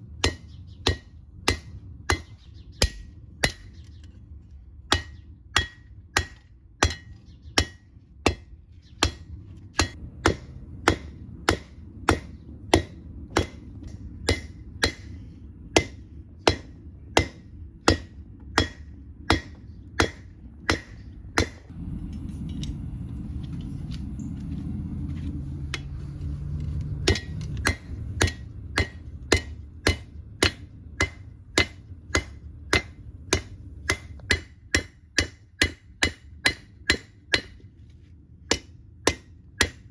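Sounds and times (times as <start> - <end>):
hammer blows ringing on steel: 4.9 - 21.6, 27.0 - 37.7
low rumble: 9.4 - 34.6.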